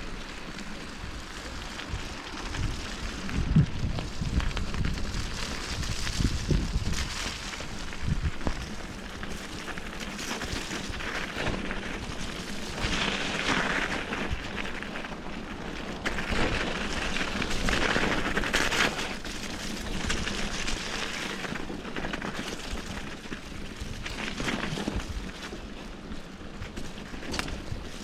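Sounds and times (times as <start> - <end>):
bicycle tyres crunching on trail: 0.0 - 28.0
wind rumble on microphone: 0.0 - 28.0.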